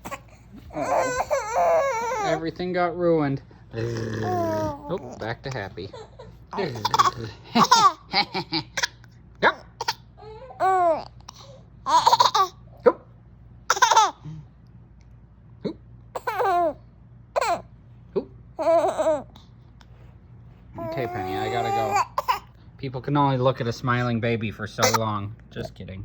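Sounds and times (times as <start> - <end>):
baby laughing and squealing: 0.0 - 2.4, 4.2 - 5.3, 5.9 - 8.1, 9.8 - 11.1, 11.9 - 12.6, 13.7 - 14.2, 16.2 - 16.8, 17.4 - 17.6, 18.6 - 19.3, 20.8 - 22.5.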